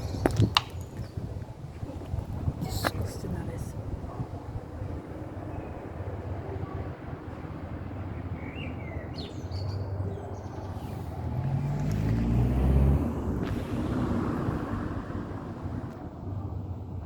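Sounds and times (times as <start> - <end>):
motor vehicle rumbling: 0.0 - 17.0
traffic noise: 0.0 - 17.0
bird chirping: 8.2 - 11.0.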